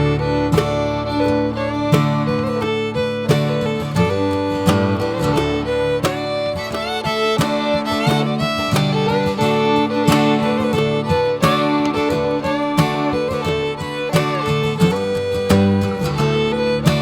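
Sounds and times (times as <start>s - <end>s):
fiddle-like melody: 0.0s - 17.0s
plucked acoustic guitar: 0.0s - 17.0s.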